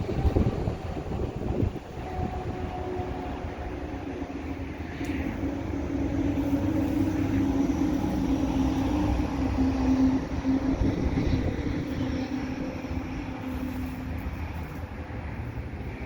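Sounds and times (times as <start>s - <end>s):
vehicle drone with low rumble: 0.0s - 16.0s.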